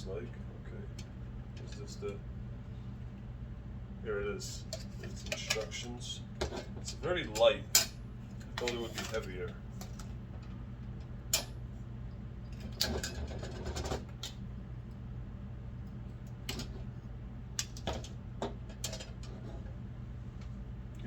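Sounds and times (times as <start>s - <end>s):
low electrical hum: 0.0s - 21.0s
metal lantern parts clattering: 8.6s - 9.4s.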